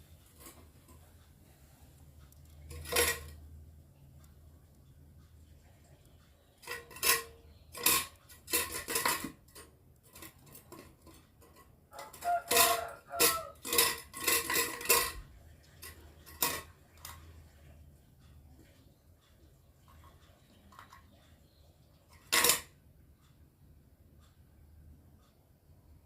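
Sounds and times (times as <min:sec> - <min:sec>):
hard objects clinking and clattering: 0:02.4 - 0:03.4, 0:06.6 - 0:17.3, 0:22.1 - 0:22.7.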